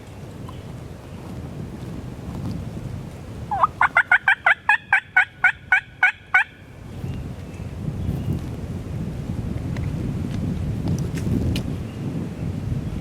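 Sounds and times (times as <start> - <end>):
wind: 0.0 - 13.0
turkey yelps: 3.5 - 6.6.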